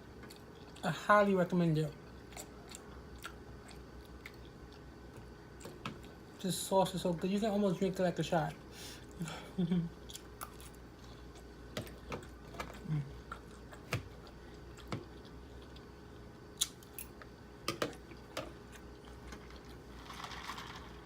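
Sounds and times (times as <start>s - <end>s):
chewing crispy food: 0.0s - 0.9s, 1.9s - 6.3s, 9.9s - 20.8s
closed-mouth hums: 12.6s - 15.0s.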